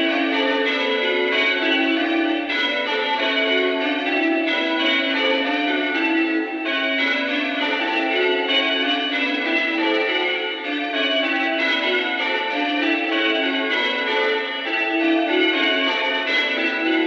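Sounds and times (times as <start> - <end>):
church bells ringing: 0.0 - 17.0.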